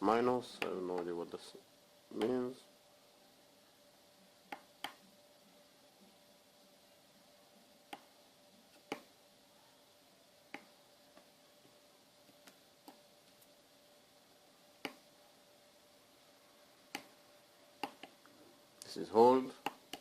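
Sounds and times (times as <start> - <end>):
faint steady hum: 0.0 - 20.0.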